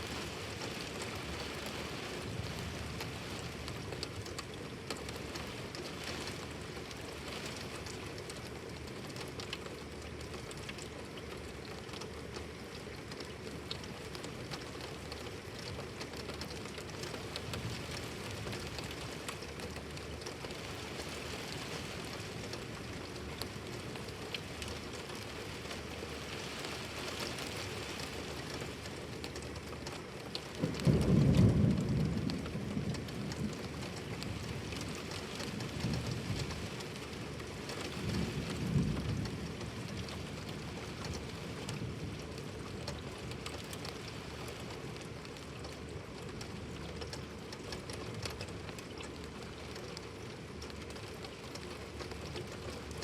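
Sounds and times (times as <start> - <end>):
heavy rain hissing: 0.0 - 7.8, 16.9 - 29.6, 30.4 - 46.0
raindrops ticking: 0.0 - 53.0.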